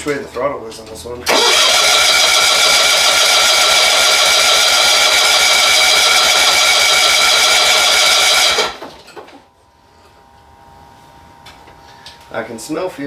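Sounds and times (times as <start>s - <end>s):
engine cranking on starter: 1.2s - 9.4s.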